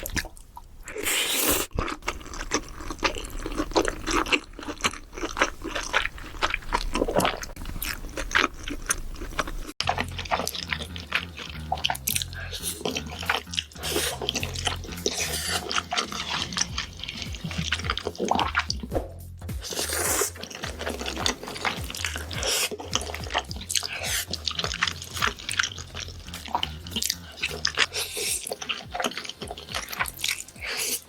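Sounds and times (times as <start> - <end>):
slurping and chewing noodles: 0.0 - 18.9, 19.5 - 31.0
background music with bass line: 9.8 - 31.0.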